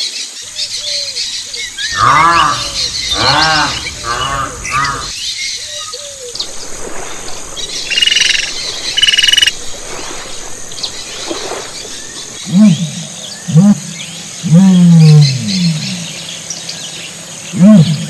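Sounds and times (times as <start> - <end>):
high rapidly pulsing calls: 0.5 - 5.2, 6.3 - 12.4
faint bird twittering: 0.5 - 12.4
sheep bleating: 1.8 - 5.1.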